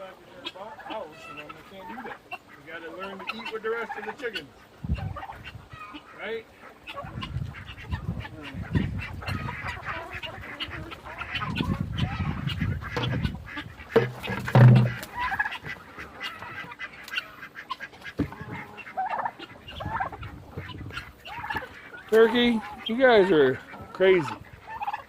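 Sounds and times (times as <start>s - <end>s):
poultry calling and clucking: 0.0s - 25.0s
low rumbling handling noise: 12.9s - 15.4s.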